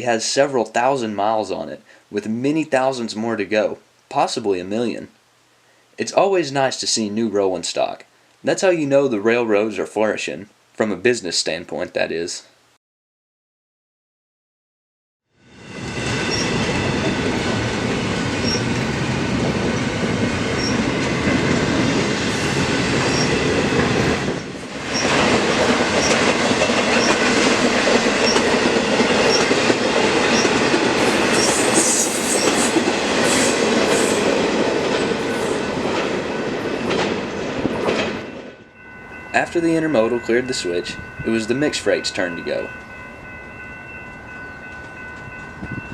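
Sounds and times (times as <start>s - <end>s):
train wheels rumbling on rails: 15.6s - 45.9s
high squealing tones: 16.0s - 17.6s, 18.4s - 21.4s, 22.2s - 25.3s, 25.9s - 27.3s, 30.3s - 34.2s.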